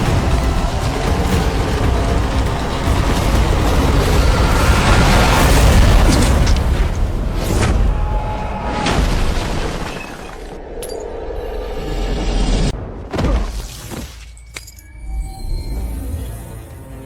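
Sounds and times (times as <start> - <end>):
heavy rumbling: 0.0 - 12.8
dramatic background music: 0.0 - 17.0.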